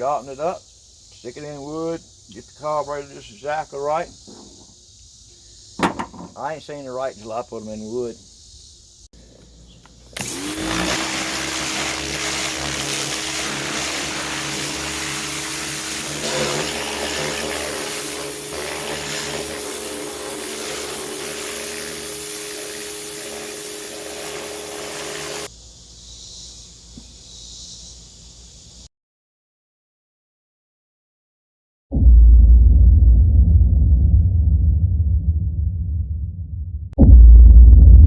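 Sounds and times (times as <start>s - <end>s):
high-speed electric motor whirring: 10.2s - 25.5s.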